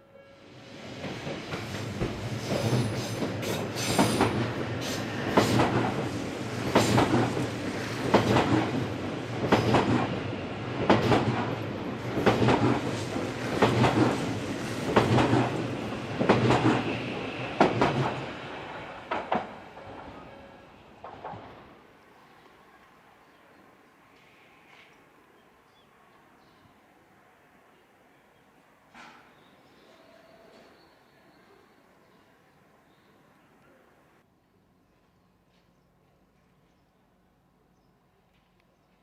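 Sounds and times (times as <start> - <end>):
low train running hum: 0.0 - 28.9
train wheels clacking: 1.0 - 20.2.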